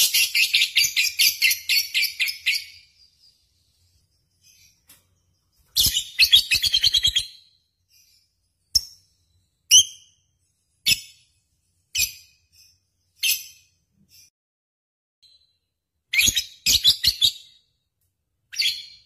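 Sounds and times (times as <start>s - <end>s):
lovebird shrill chirps: 5.7s - 8.1s, 16.1s - 17.6s.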